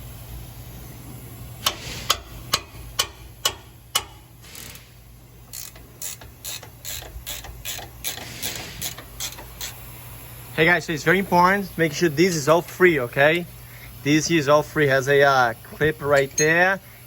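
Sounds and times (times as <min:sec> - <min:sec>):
ratchet wrench clicking: 0:01.6 - 0:09.8, 0:16.1 - 0:16.8.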